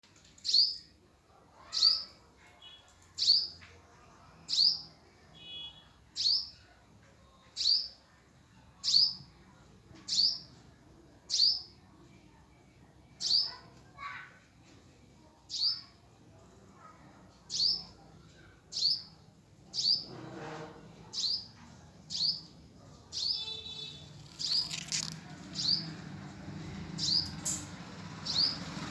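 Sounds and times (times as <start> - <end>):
hummingbird chirping: 27.0 - 28.6.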